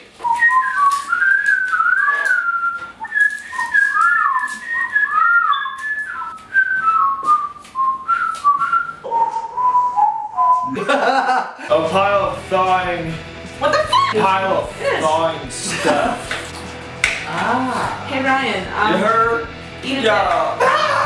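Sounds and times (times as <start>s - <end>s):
person whistling a tune: 0.2s - 10.7s.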